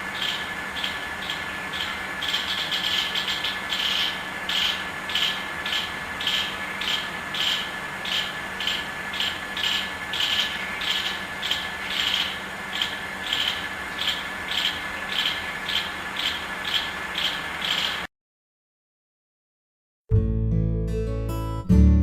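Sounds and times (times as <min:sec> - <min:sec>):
squirrel chattering: 0:00.2 - 0:18.1.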